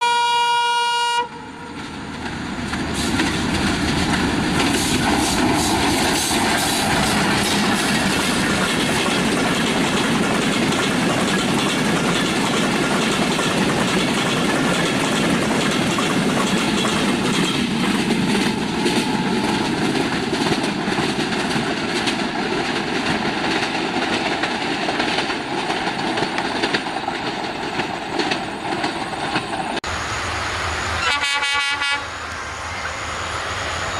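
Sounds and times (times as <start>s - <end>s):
train horn note: 0.0s - 1.7s, 31.0s - 32.4s
train rumbling on rails: 0.0s - 33.9s
wheels clattering over rail joints: 1.7s - 29.8s.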